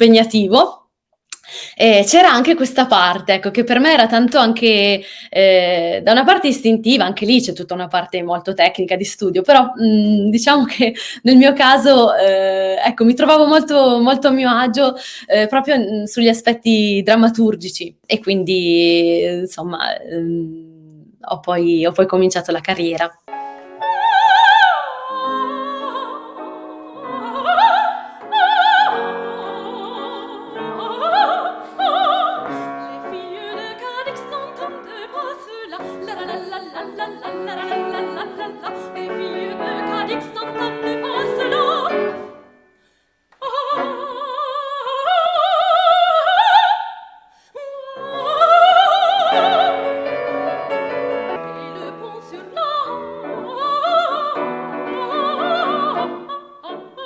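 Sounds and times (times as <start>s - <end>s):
piano accompaniment: 23.2s - 42.9s, 48.0s - 57.0s
operatic soprano singing: 23.6s - 42.6s, 43.4s - 57.0s.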